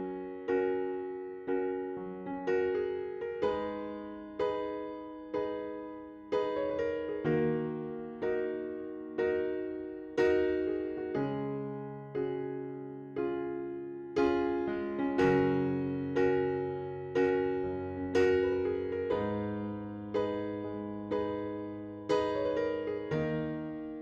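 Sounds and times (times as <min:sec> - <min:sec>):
electric piano chords: 0:00.0 - 0:24.0.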